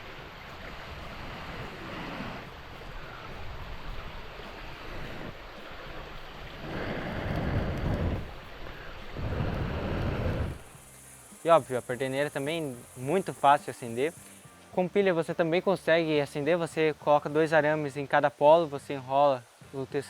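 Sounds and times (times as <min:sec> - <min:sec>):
wind buffeting microphone: 0:00.0 - 0:10.7.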